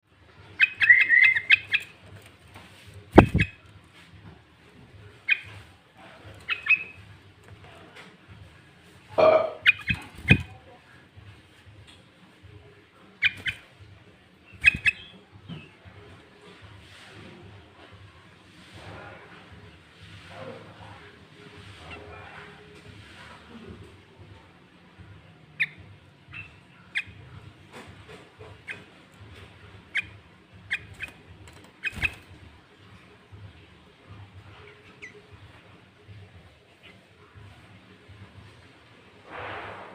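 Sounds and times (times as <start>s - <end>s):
bird chirping: 0.4s - 2.0s, 3.2s - 3.6s, 5.2s - 5.6s, 6.4s - 7.0s, 9.2s - 10.6s, 13.2s - 13.7s, 14.4s - 15.7s, 25.6s - 27.4s, 28.5s - 31.2s, 31.8s - 32.4s
bird sharp calls: 0.5s - 1.9s, 3.2s - 3.6s, 6.4s - 7.0s, 9.2s - 10.5s, 13.2s - 13.6s, 14.6s - 15.1s, 31.8s - 32.2s.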